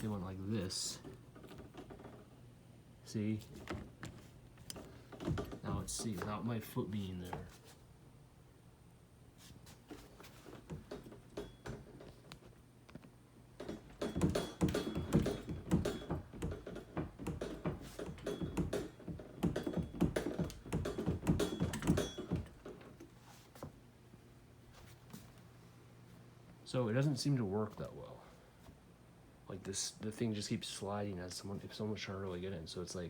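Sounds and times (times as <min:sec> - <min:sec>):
door knocking against door stopper: 0:13.6 - 0:22.7.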